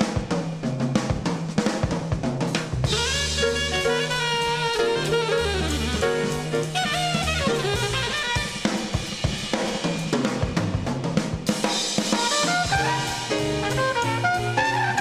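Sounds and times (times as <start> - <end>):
big band jazz record: 0.0 - 15.0
drum kit playing: 0.0 - 15.0
held horn chords: 2.8 - 9.5, 12.1 - 15.0.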